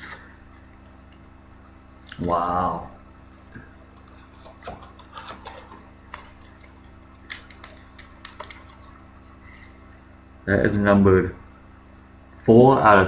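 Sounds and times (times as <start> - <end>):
faint steady hum: 0.0 - 13.0
plastic card sleeves rustling: 4.0 - 10.0
small clicks: 6.1 - 9.7.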